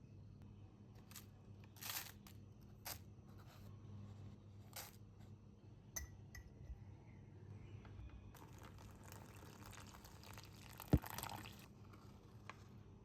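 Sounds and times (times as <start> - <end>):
liquid pouring: 8.4 - 11.8.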